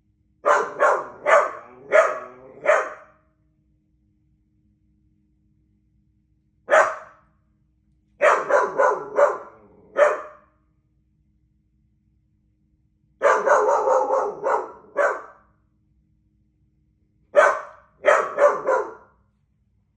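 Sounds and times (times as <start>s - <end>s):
dog barking: 0.4s - 3.2s, 6.7s - 7.2s, 8.2s - 10.5s, 13.2s - 15.5s, 17.3s - 19.2s.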